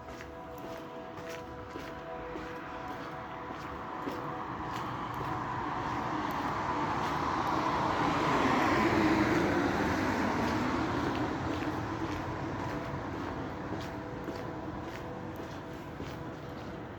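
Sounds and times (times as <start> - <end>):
faint steady tones: 9.3 - 16.9.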